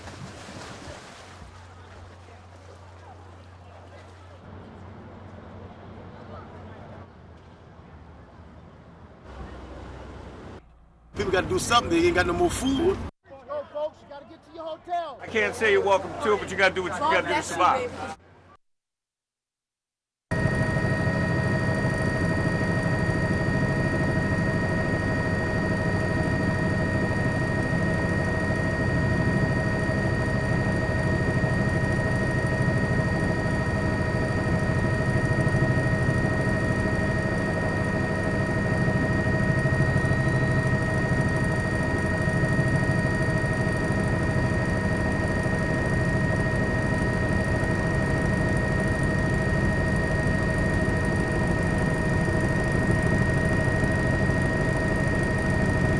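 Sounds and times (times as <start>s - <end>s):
aircraft engine drone: 20.3s - 55.9s.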